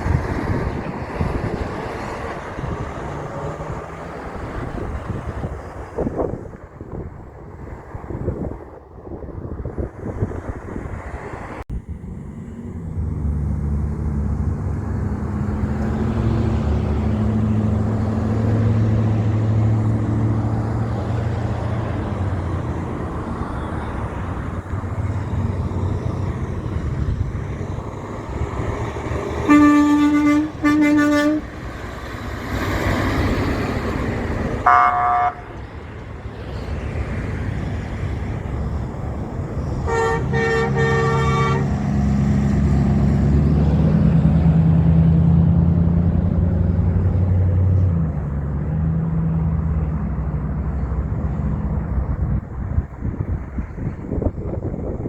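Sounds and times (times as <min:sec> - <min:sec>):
truck engine passing: 0:00.0 - 0:55.0
truck horn blasts: 0:29.2 - 0:31.8, 0:34.6 - 0:35.6, 0:39.6 - 0:42.2
short high-pitched honk: 0:29.5 - 0:31.5, 0:34.6 - 0:35.5, 0:39.8 - 0:41.8.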